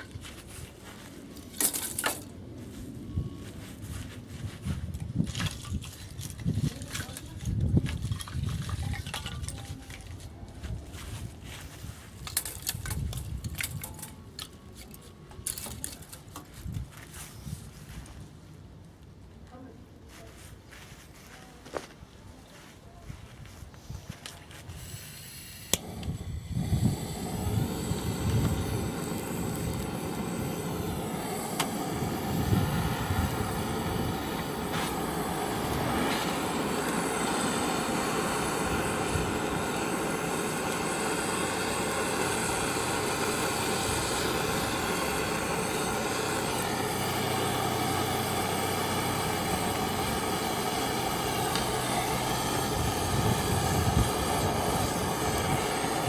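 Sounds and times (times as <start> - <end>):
mechanical drone with high whine: 25.5 - 56.0.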